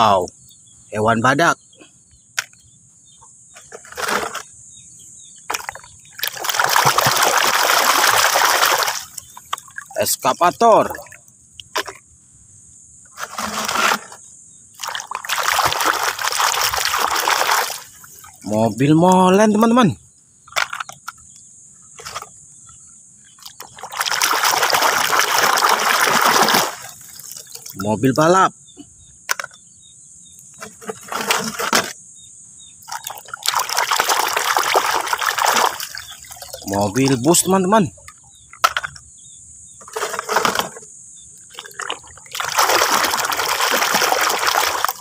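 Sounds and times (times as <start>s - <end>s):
water splashing: 5.5s - 12.0s, 14.8s - 18.6s, 23.4s - 27.8s, 32.8s - 37.7s, 39.9s - 40.8s, 41.5s - 45.0s.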